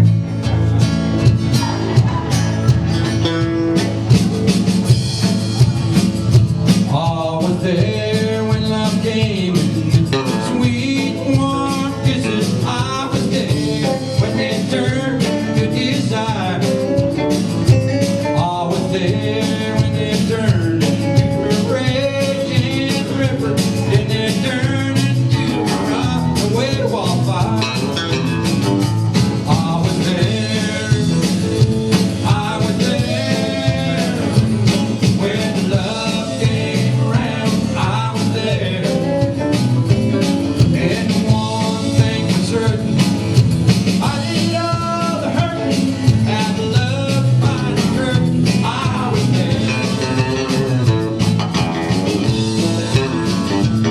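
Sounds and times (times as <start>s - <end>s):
band playing: 0.0s - 53.9s
person singing: 6.8s - 28.2s, 29.2s - 43.3s, 43.9s - 51.2s, 52.1s - 53.9s.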